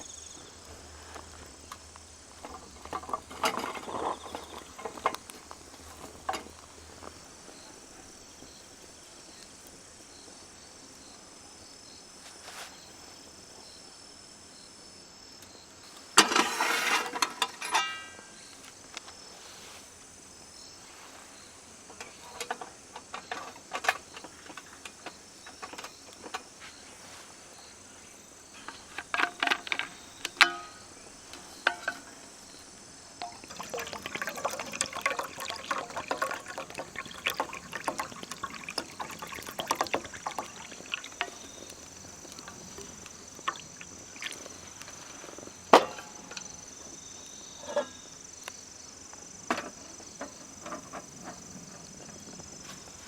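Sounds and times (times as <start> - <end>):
clinks and knocks of handling: 28.7 - 32.3, 33.2 - 46.6
liquid pouring: 33.2 - 45.5.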